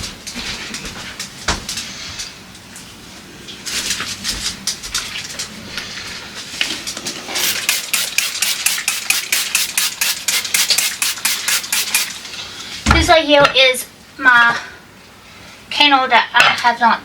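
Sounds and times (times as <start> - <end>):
rapid sharp clicks: 7.4 - 12.1.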